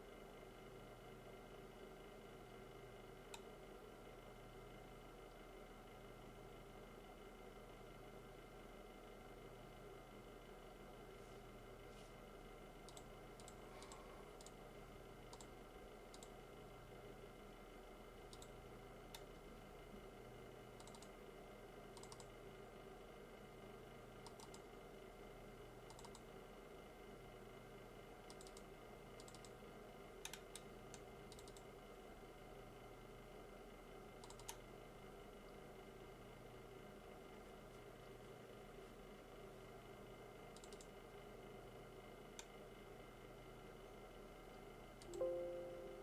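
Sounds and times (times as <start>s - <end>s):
steady electrical hum: 0.0s - 46.0s.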